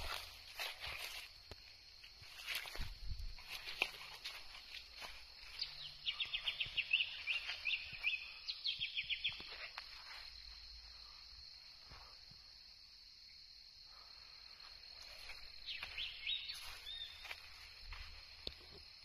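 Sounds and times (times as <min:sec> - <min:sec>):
bird chirping: 0:05.4 - 0:09.7, 0:15.6 - 0:17.7.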